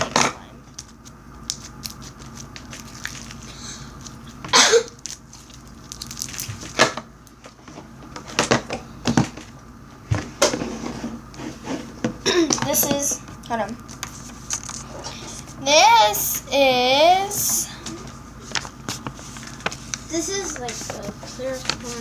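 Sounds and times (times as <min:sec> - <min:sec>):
slime clicking and squelching: 0:00.8 - 0:04.2, 0:05.0 - 0:06.8.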